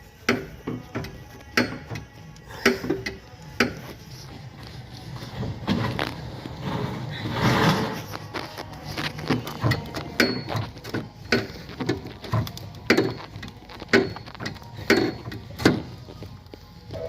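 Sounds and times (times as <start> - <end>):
hand tools clicking and knocking: 0.2 - 4.0, 8.0 - 17.0.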